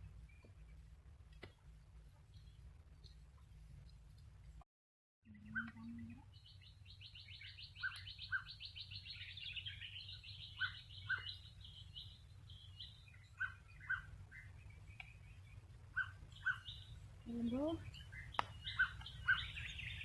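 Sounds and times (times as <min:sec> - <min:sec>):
bird twittering trill: 0:02.0 - 0:03.7, 0:05.3 - 0:20.0
short bird chirps in pairs: 0:05.3 - 0:20.0.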